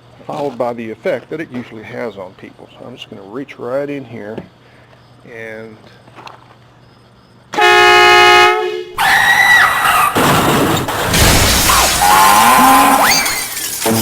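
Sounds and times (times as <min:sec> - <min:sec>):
air horn blast: 0:07.6 - 0:09.0
screams: 0:09.0 - 0:14.0
crashing and shattering: 0:10.2 - 0:14.0.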